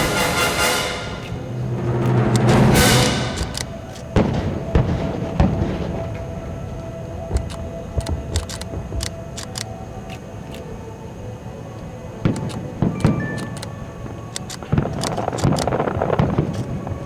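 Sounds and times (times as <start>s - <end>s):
low rumble: 0.0s - 6.2s
fireworks bangs: 0.0s - 9.4s, 12.2s - 17.0s
fireworks cracking and popping: 3.4s - 9.4s, 14.5s - 17.0s.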